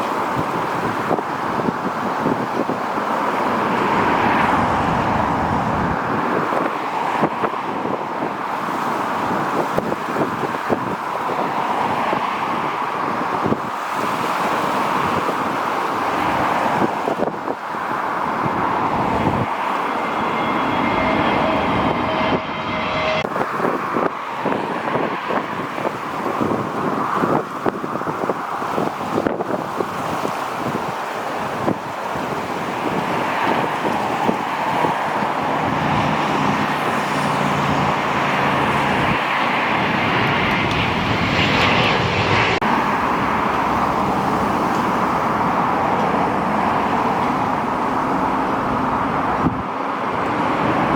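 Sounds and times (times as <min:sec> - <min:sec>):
jet engines running: 0:00.0 - 0:13.7, 0:14.7 - 0:28.7, 0:31.0 - 0:50.9
gusty wind buffeting microphone: 0:00.0 - 0:50.9
steady rushing roar: 0:00.0 - 0:50.9
high whining tones: 0:18.2 - 0:23.4, 0:35.1 - 0:43.8.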